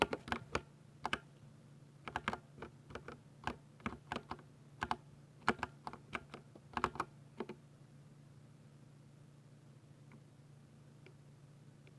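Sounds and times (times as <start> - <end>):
keyboard typing: 0.0 - 1.3, 2.1 - 7.6
faint steady hum: 0.0 - 11.9.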